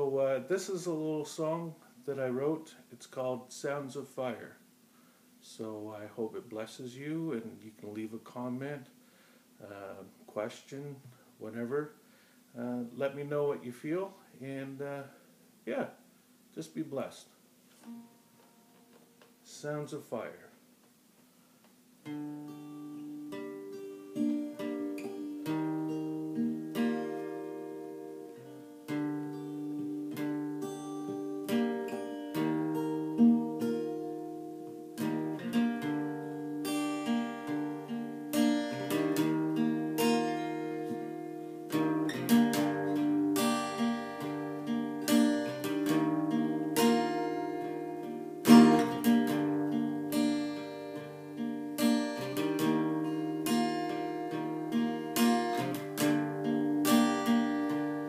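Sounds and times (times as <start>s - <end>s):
acoustic guitar strumming: 17.8s - 19.3s, 22.0s - 58.0s.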